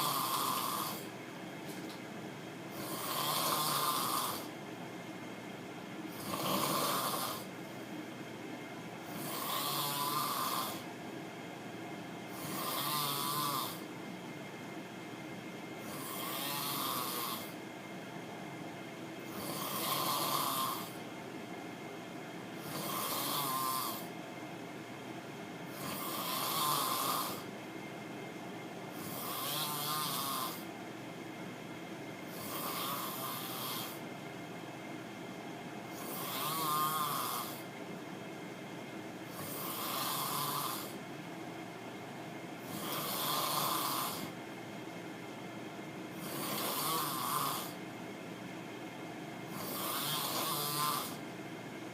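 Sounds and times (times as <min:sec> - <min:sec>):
person snoring loudly: 0:00.0 - 0:01.1, 0:02.7 - 0:04.5, 0:06.1 - 0:07.5, 0:09.1 - 0:10.9, 0:12.3 - 0:13.9, 0:15.8 - 0:17.6, 0:19.3 - 0:21.0, 0:22.6 - 0:24.1, 0:25.7 - 0:27.5, 0:28.9 - 0:30.7, 0:32.3 - 0:34.0, 0:35.9 - 0:37.7, 0:39.3 - 0:41.0, 0:42.6 - 0:44.4, 0:46.1 - 0:47.8, 0:49.5 - 0:51.2.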